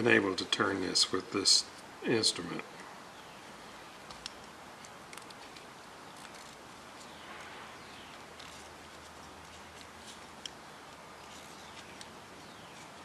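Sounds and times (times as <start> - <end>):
faint background hiss: 0.0 - 13.0
distant birds chirping: 5.8 - 9.4, 11.2 - 13.0.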